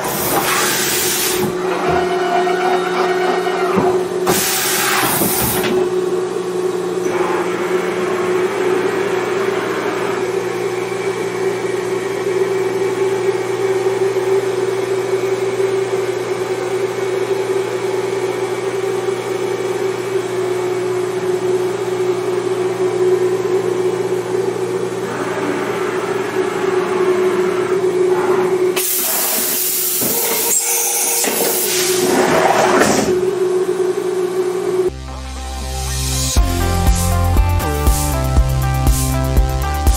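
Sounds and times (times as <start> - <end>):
machine whine over hum: 0.0 - 35.0.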